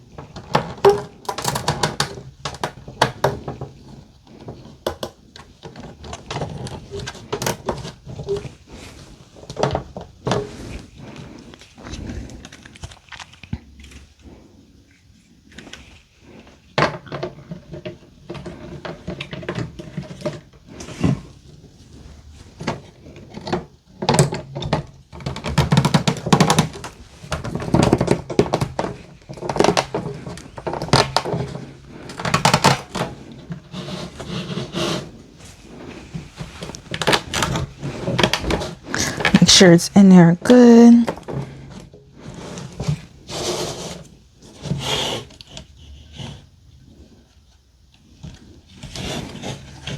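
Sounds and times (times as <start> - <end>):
plastic pieces knocking and clicking: 0.4 - 3.6.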